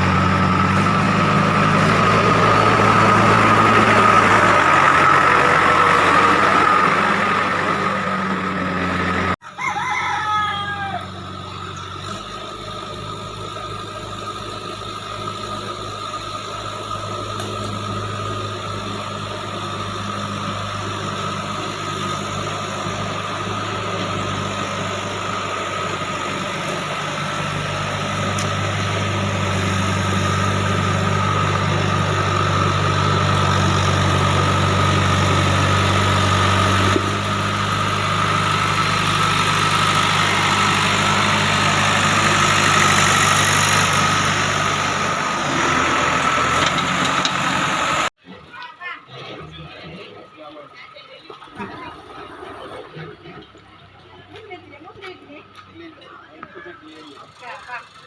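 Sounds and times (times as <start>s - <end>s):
diesel engine running: 0.0s - 48.5s, 49.2s - 58.0s
rooster crowing: 9.4s - 11.4s.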